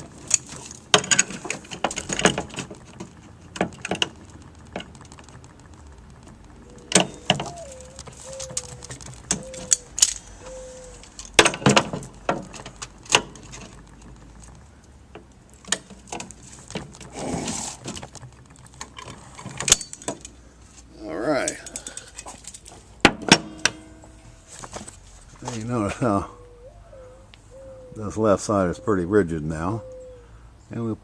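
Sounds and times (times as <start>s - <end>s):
sheet metal clicks and clanks: 0.1s - 5.6s.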